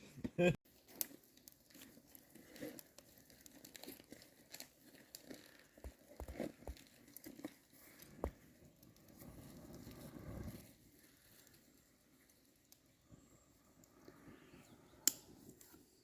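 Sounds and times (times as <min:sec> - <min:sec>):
food packaging crinkling: 0:00.7 - 0:07.7.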